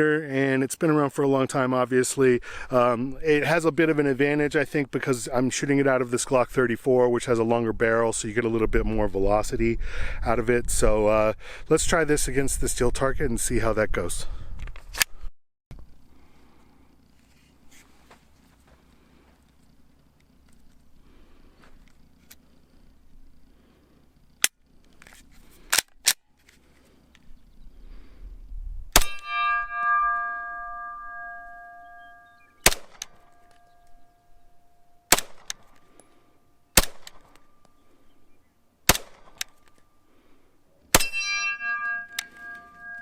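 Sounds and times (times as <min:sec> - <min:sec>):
pistol shots: 0:29.0 - 0:29.4, 0:32.6 - 0:33.2, 0:35.1 - 0:35.8, 0:36.7 - 0:37.5, 0:38.8 - 0:39.6
steel target ringing: 0:29.0 - 0:37.7, 0:40.9 - 0:43.0.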